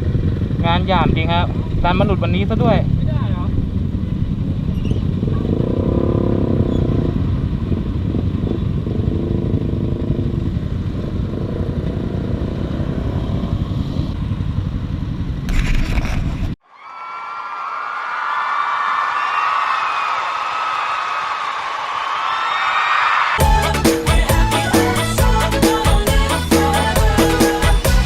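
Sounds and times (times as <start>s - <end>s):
motorcycle engine running: 0.0s - 16.6s
wind rumble on microphone: 0.0s - 16.6s.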